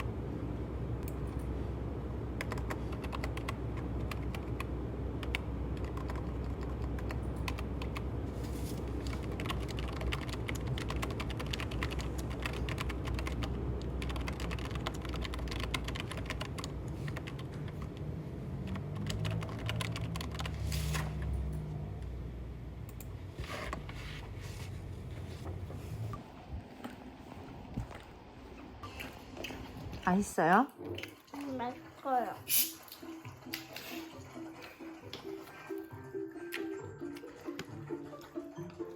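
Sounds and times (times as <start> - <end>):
low steady hum: 0.0 - 38.9
computer keyboard typing: 2.4 - 8.1, 9.0 - 18.0, 18.6 - 20.6.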